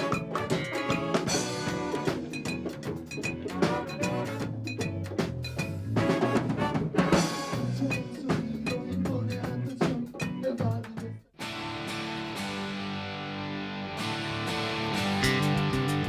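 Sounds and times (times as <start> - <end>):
band music with drums: 0.0 - 11.2, 14.4 - 16.0.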